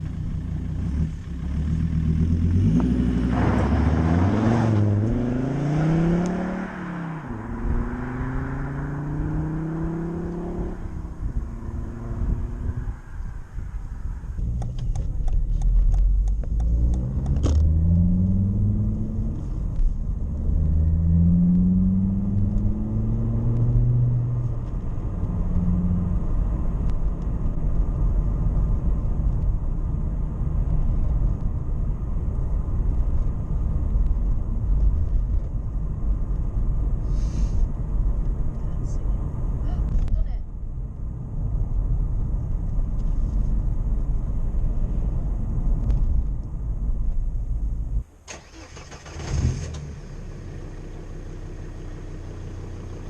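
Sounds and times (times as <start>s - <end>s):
car engine revving: 0.3s - 40.1s.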